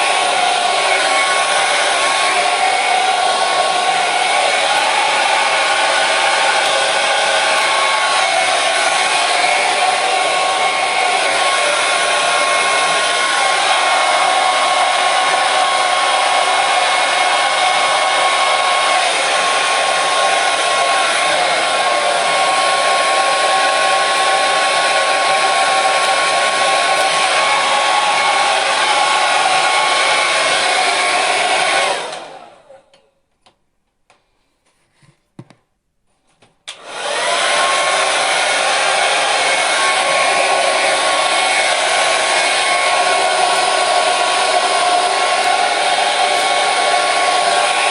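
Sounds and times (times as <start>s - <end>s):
hair dryer blowing: 0.0s - 32.9s, 36.7s - 47.9s.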